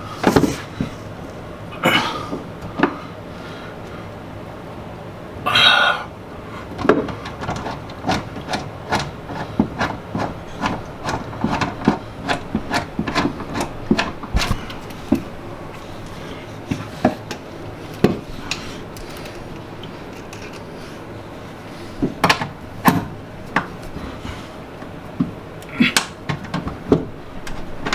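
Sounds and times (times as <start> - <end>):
sharp taps and knocks on metal: 6.8 - 15.3.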